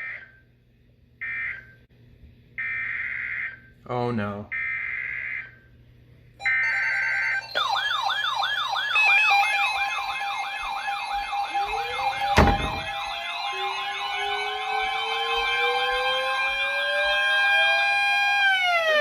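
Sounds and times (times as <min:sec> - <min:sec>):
steady beeping tones: 0:06.5 - 0:17.5
alert radio siren wail: 0:06.5 - 0:19.0
slow rising tone: 0:07.7 - 0:19.0.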